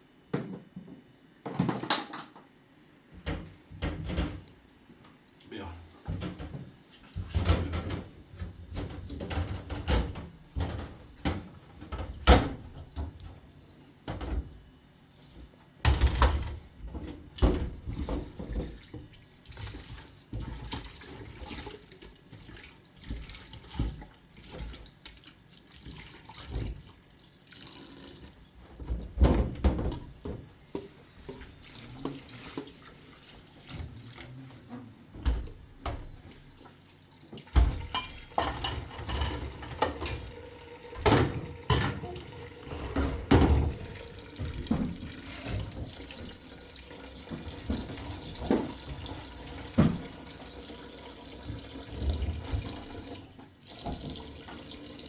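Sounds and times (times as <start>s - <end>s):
objects knocking and clunking: 0.3s - 2.5s, 6.0s - 13.4s, 37.4s - 46.4s, 47.1s - 50.2s
water splashing and pouring: 39.6s - 55.0s.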